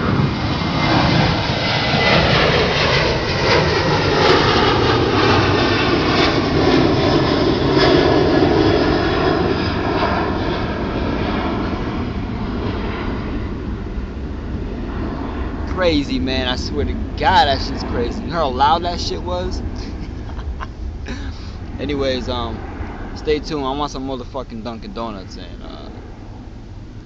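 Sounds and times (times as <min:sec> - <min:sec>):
airplane flying low overhead: 0:00.0 - 0:27.0.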